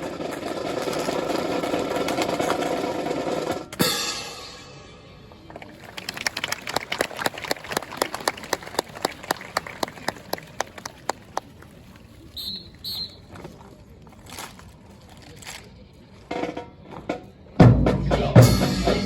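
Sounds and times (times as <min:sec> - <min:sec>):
audience clapping: 0:05.6 - 0:12.0.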